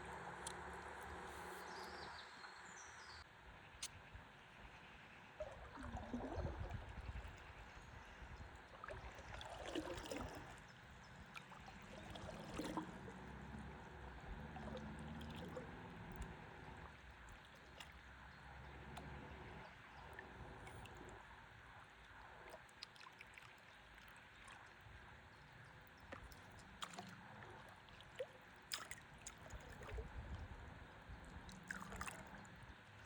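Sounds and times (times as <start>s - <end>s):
river water gurgling and lapping: 4.8s - 33.0s
soft water splashes: 4.8s - 33.0s.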